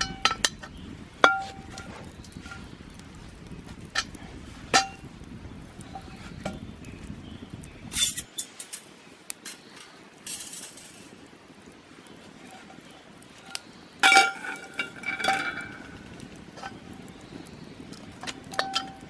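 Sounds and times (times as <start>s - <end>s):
metal cookware clinking: 0.0s - 0.6s, 1.2s - 2.6s, 14.0s - 16.0s, 18.2s - 19.0s
low background rumble: 0.0s - 8.3s.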